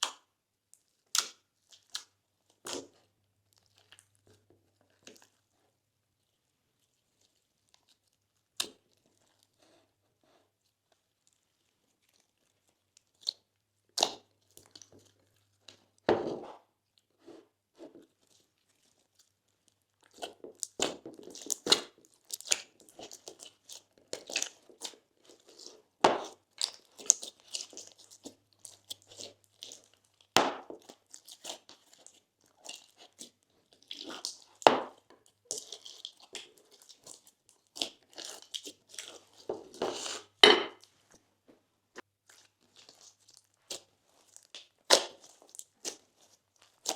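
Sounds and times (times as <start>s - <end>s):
crunchy slime squeezed by hand: 42.3s - 46.9s.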